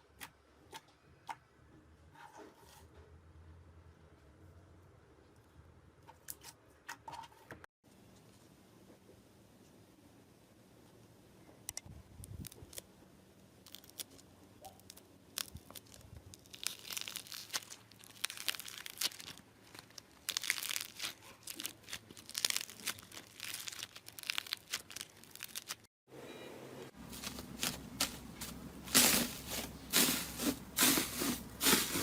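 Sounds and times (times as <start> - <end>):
slime crackling: 14.8 - 25.9, 27.1 - 32.0.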